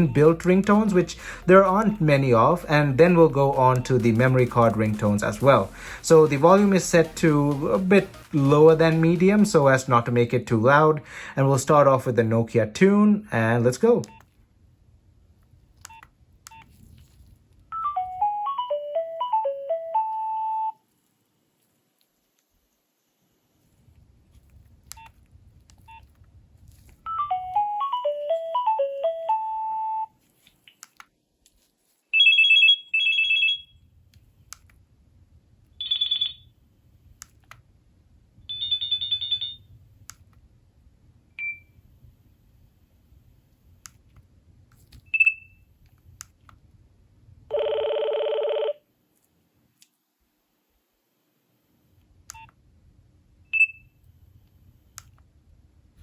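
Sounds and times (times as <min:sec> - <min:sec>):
phone ringtone melody: 0:17.7 - 0:20.8, 0:27.1 - 0:30.1, 0:35.8 - 0:36.4, 0:38.5 - 0:39.6, 0:47.5 - 0:48.8.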